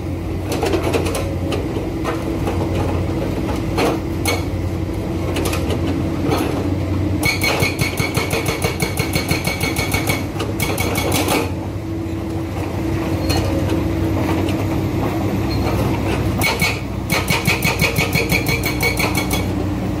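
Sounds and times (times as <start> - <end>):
diesel engine running: 0.0 - 20.0
hydraulic breaker hammering rock: 7.2 - 11.6, 16.3 - 19.6.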